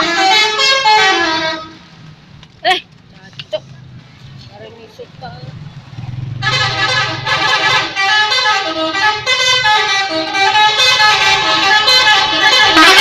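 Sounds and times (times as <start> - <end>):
multi-tone bus air horns playing tune: 0.0 - 2.0, 6.3 - 13.0
low engine rumble: 0.0 - 13.0.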